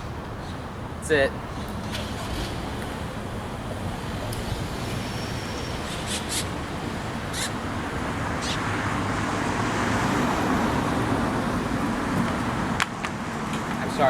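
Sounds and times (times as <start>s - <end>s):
road traffic rumble: 0.0s - 14.0s.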